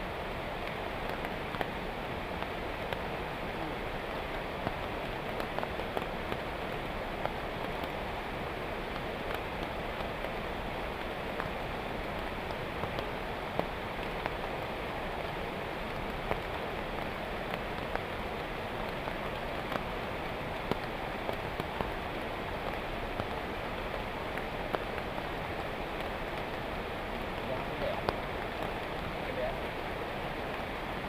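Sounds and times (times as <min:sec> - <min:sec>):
heavy rain falling: 0:00.0 - 0:31.0
raindrops ticking on surfaces: 0:00.0 - 0:31.0.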